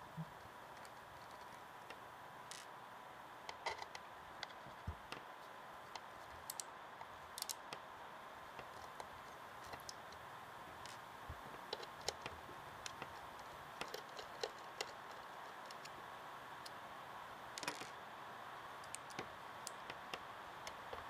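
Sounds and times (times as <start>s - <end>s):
steady hiss: 0.0s - 21.0s
screwdriver clicks and taps: 11.7s - 15.9s.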